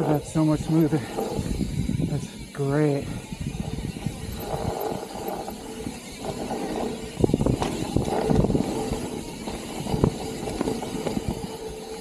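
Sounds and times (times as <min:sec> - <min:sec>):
bike rattling over bumps: 0:00.0 - 0:12.0
bike tyres rolling on dirt: 0:00.0 - 0:12.0.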